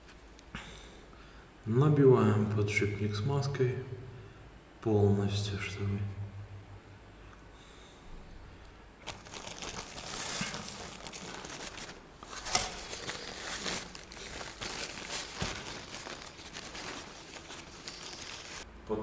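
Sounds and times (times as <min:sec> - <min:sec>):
grease squishing and rubbing: 0:09.0 - 0:18.7.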